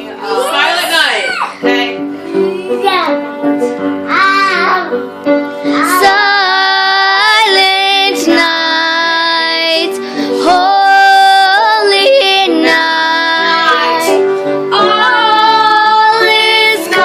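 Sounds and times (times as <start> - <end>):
children singing a carol: 5.6 - 17.0.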